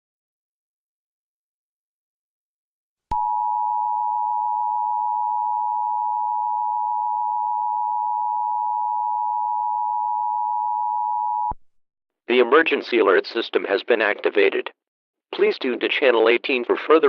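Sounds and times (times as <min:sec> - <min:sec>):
two-tone alarm signal: 0:03.2 - 0:11.6.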